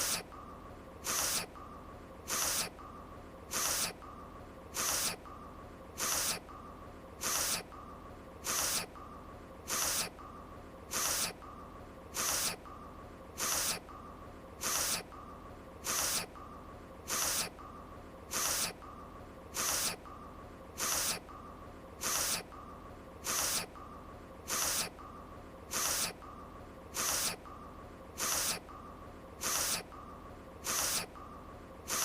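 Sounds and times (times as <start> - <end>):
short sharp sniffs: 0.0 - 0.3, 1.0 - 1.6, 2.3 - 2.8, 3.5 - 4.0, 4.7 - 5.2, 6.0 - 6.4, 7.2 - 7.7, 8.4 - 8.9, 9.7 - 10.1, 10.9 - 11.4, 12.2 - 12.6, 13.4 - 13.8, 14.6 - 15.1, 15.8 - 16.3, 17.1 - 17.5, 18.3 - 18.8, 19.6 - 20.0, 20.8 - 21.2, 22.0 - 22.5, 23.2 - 23.7, 24.5 - 24.9, 25.7 - 26.2, 27.0 - 27.4, 28.2 - 28.6, 29.4 - 29.9, 30.6 - 31.1
faint steady tone: 0.0 - 32.0.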